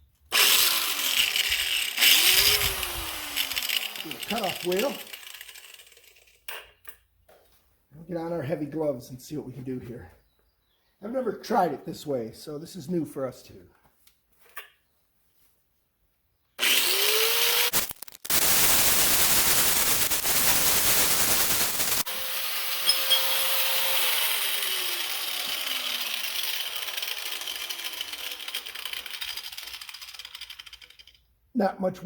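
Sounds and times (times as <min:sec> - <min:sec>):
grinder motor whine winding down: 0:00.3 - 0:06.3, 0:16.6 - 0:30.9
angle grinder cutting metal: 0:00.3 - 0:06.4, 0:16.6 - 0:31.2.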